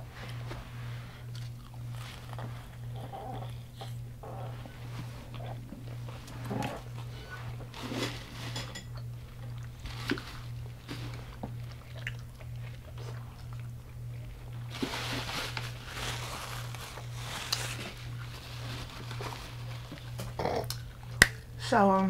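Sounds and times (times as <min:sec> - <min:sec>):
low electrical hum: 0:00.0 - 0:22.0
chewing fried food: 0:01.2 - 0:08.1, 0:08.9 - 0:21.2
dishes clinking: 0:08.0 - 0:09.0.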